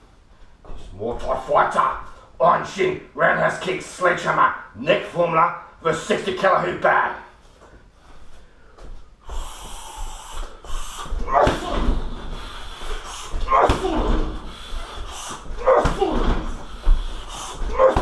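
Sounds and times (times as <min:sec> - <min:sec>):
person shouting: 0:11.2 - 0:12.0, 0:13.5 - 0:14.4, 0:15.6 - 0:16.5, 0:17.7 - 0:18.0
kicks thudding on heavy bag: 0:11.2 - 0:12.4, 0:13.4 - 0:18.0.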